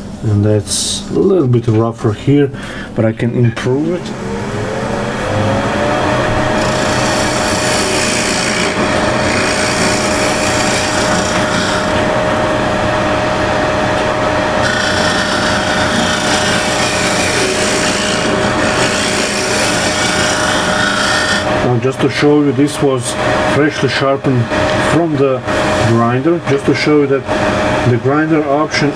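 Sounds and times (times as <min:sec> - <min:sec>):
wood lathe motor whining: 0:03.6 - 0:28.9
scraper cutting spinning wood: 0:03.8 - 0:21.7, 0:24.4 - 0:28.1.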